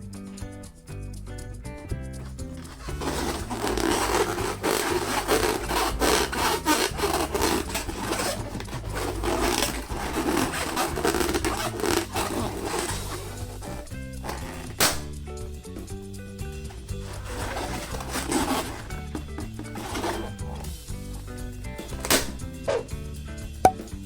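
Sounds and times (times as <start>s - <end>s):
background music with low melody: 0.0s - 24.0s
balloon rubbing and squeaking: 2.2s - 15.2s, 16.7s - 22.9s.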